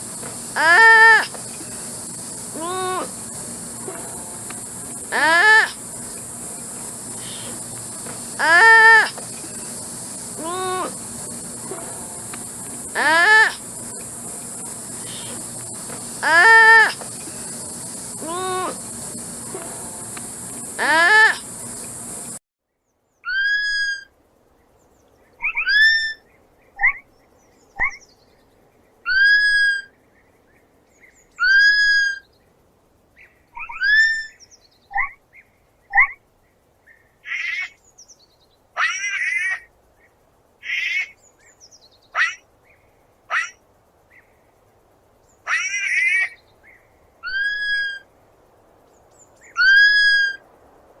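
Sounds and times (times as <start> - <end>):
sloth squeaking calls: 0.5 - 3.1, 5.1 - 5.8, 8.3 - 9.6, 12.9 - 13.6, 16.2 - 17.3, 20.8 - 21.4, 23.2 - 24.1, 25.4 - 26.2, 29.1 - 29.9, 31.4 - 32.2, 33.6 - 35.1, 38.8 - 39.7, 42.2 - 42.4, 43.3 - 43.6, 45.5 - 46.4, 47.2 - 48.1, 49.5 - 50.4.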